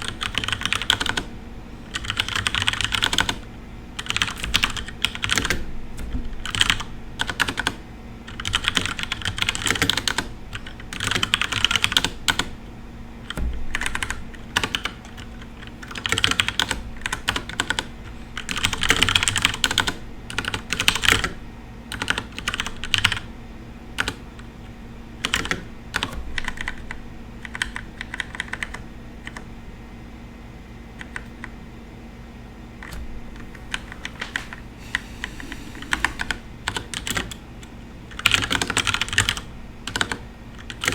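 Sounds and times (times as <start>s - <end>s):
mechanical keyboard typing: 0.0s - 1.3s, 1.9s - 3.4s, 4.0s - 12.5s, 13.3s - 23.3s, 24.0s - 24.2s, 25.2s - 29.4s, 35.9s - 37.4s, 38.1s - 40.9s.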